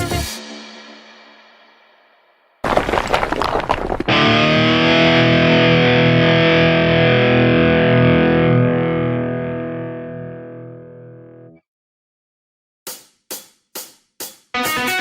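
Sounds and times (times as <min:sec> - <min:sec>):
distorted electric guitar chord: 0:04.2 - 0:11.5.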